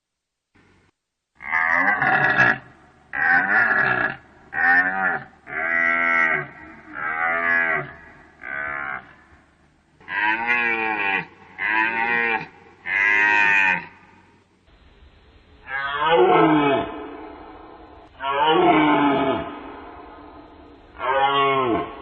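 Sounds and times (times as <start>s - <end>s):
deer calling: 1.5s - 9.4s, 10.0s - 14.2s.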